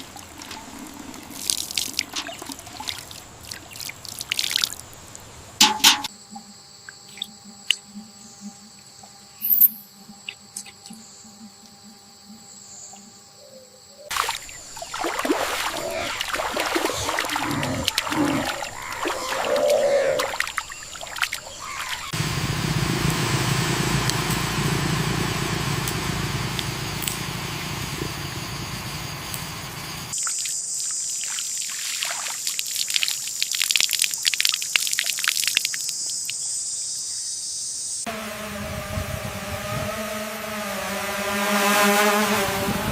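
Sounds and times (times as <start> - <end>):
rushing water: 0.0 - 6.1, 14.1 - 22.2, 30.1 - 35.9
water splashing: 0.0 - 6.1, 14.1 - 22.2, 30.1 - 35.9
high-pitched hiss: 9.2 - 10.8.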